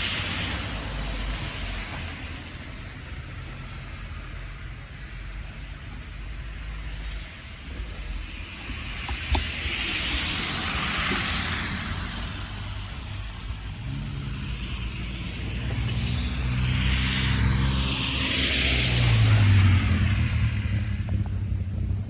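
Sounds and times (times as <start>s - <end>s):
tyre noise on snowy road: 0.0s - 22.0s
vehicle engine low hum: 10.8s - 22.0s.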